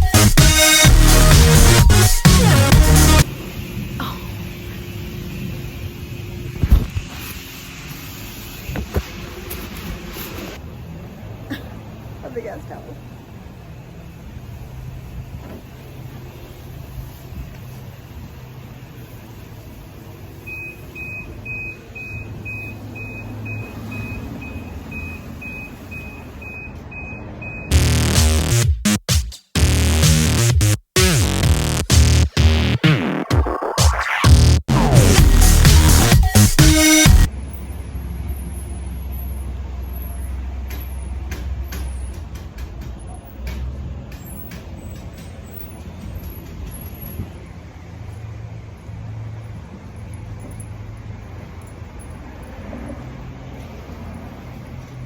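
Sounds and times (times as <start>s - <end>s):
loud electronic music: 0.0s - 3.3s, 27.7s - 37.3s
vehicle engine rumbling: 0.8s - 28.7s, 37.0s - 55.0s
vehicle warning beeper: 20.4s - 28.0s.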